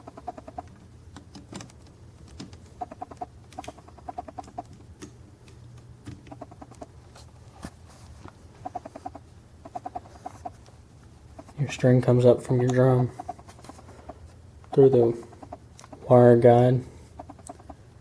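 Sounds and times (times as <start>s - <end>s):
bird clucking calls: 0.0s - 0.7s, 2.8s - 4.7s, 6.3s - 6.9s, 8.6s - 10.6s, 13.0s - 16.2s, 17.1s - 17.8s.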